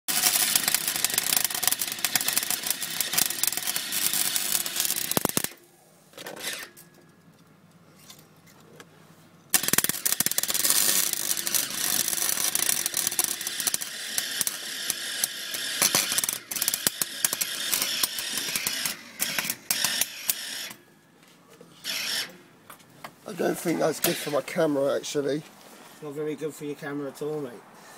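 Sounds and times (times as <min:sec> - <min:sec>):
arc welder crackling and sizzling: 0:00.1 - 0:05.7, 0:09.5 - 0:20.9, 0:23.3 - 0:24.9.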